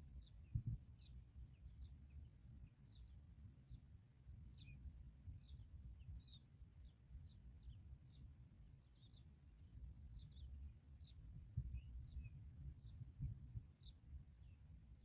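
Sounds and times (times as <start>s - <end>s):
small birds chirping: 4.5s - 15.0s.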